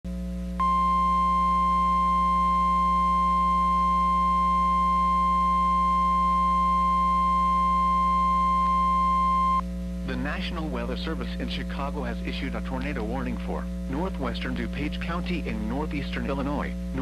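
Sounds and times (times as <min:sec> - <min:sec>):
low steady hum: 0:00.1 - 0:17.0
steady alarm tone: 0:00.6 - 0:09.6.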